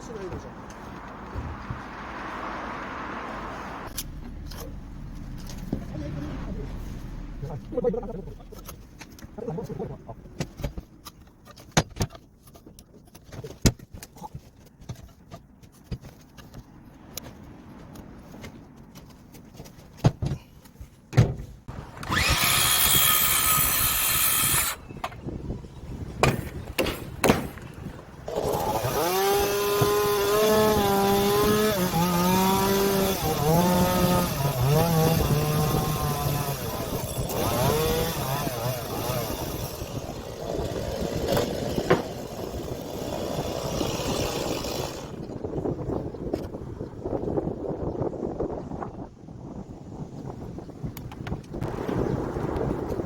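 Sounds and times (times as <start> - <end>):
chainsaw cutting wood: 21.8 - 24.8, 28.3 - 45.4
chainsaw running unloaded: 21.9 - 24.8, 28.3 - 45.3.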